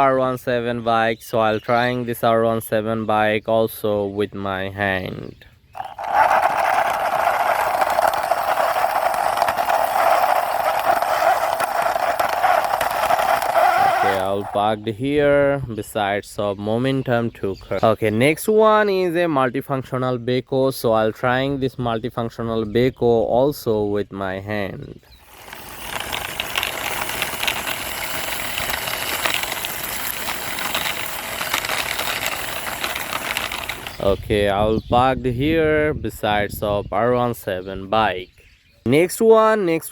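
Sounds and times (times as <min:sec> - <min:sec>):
toy wheels rolling and rattling: 0:05.8 - 0:14.8, 0:25.1 - 0:34.3
buzzing engine-like drone: 0:25.2 - 0:34.0.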